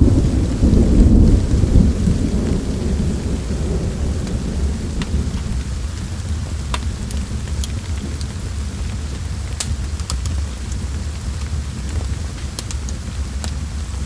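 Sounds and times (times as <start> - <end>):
rolling thunder: 0.0 - 8.0
steady rain: 0.0 - 14.0
wood fire crackling: 0.0 - 14.0.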